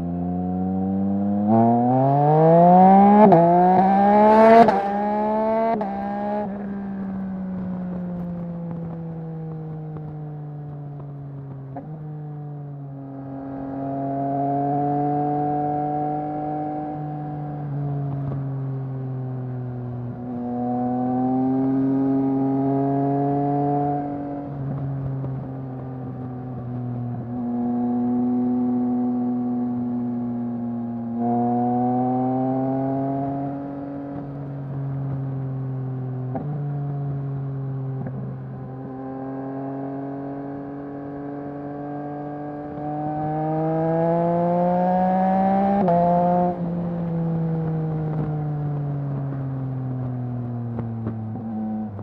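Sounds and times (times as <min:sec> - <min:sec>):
motorcycle engine shifting gears: 0:36.0 - 0:52.0.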